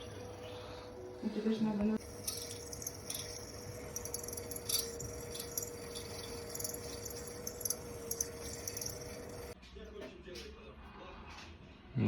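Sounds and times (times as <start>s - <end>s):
faint steady hum: 0.0s - 9.6s
small metal parts clicking and rattling: 2.0s - 9.6s.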